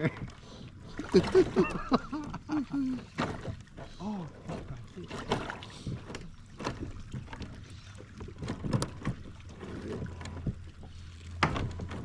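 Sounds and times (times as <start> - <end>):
knocks and taps on a kayak: 11.4 - 12.0.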